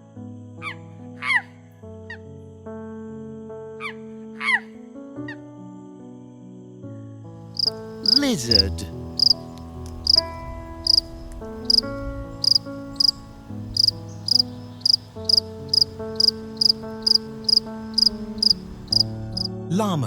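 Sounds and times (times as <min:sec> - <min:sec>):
soft background music chords: 0:00.0 - 0:20.0
cricket chirping: 0:07.4 - 0:19.5.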